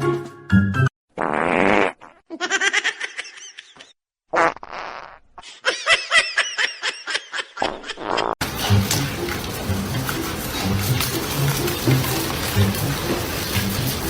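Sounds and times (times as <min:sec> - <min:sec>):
buzzy fart-like blare: 0:01.2 - 0:02.2, 0:04.3 - 0:05.3, 0:07.6 - 0:08.8.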